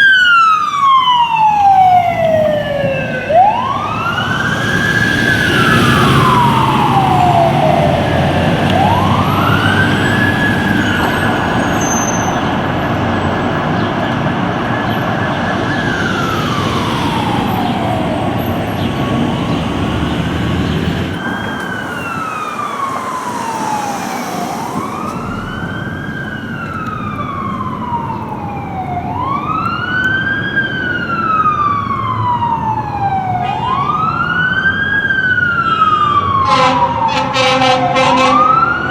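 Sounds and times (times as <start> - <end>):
engine and traffic rumble: 0.0 - 38.9
fire truck siren wailing: 0.0 - 38.9.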